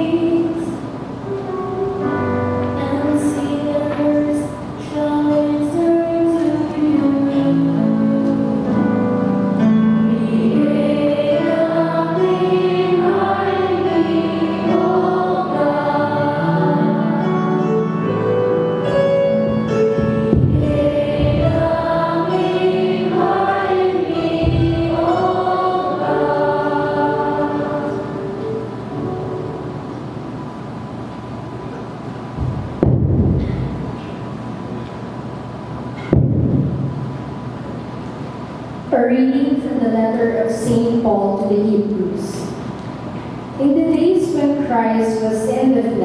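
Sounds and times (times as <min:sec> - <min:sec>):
choir singing: 0:00.0 - 0:00.9, 0:02.2 - 0:30.1
low thumps: 0:19.4 - 0:22.5, 0:24.1 - 0:25.7, 0:32.3 - 0:34.2, 0:36.0 - 0:37.7.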